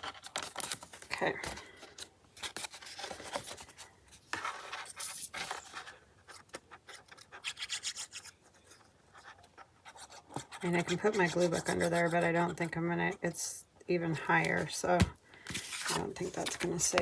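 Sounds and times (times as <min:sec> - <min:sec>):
paper being rubbed and scraped: 0:09.8 - 0:12.6.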